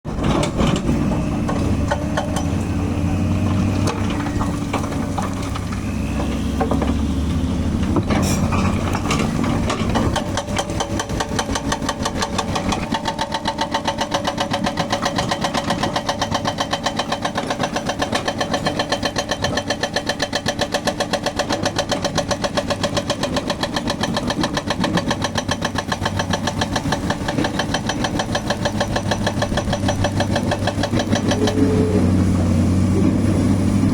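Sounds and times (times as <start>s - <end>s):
excavator diesel engine running: 0.1s - 33.9s
hydraulic breaker hammering: 7.9s - 32.0s
scattered knocks: 23.8s - 31.8s.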